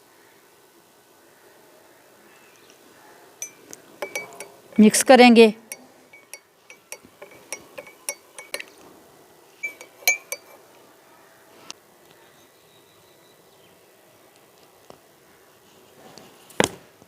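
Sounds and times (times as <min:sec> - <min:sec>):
spoon clinking against cup: 0:03.4 - 0:08.8, 0:09.6 - 0:10.6.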